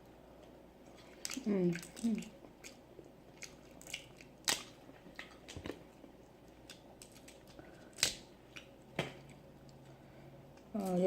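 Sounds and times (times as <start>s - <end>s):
clicks and smacks of eating crab: 3.4s - 9.8s.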